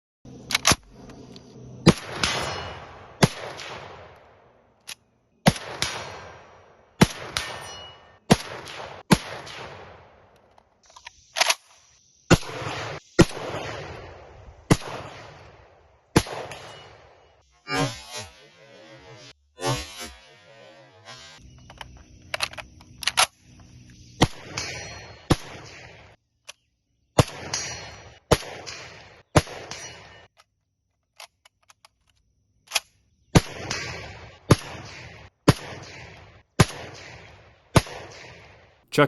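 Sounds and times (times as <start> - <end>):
rifle shots with echo: 1.8 - 4.4, 5.4 - 10.2, 12.3 - 17.2, 27.2 - 30.1, 33.4 - 39.0.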